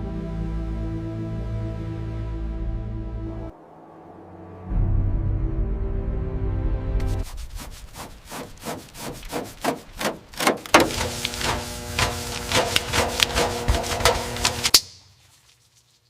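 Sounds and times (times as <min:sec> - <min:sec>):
rhythmic scraping on metal: 0:07.1 - 0:14.7
steady machine hum: 0:10.2 - 0:14.7.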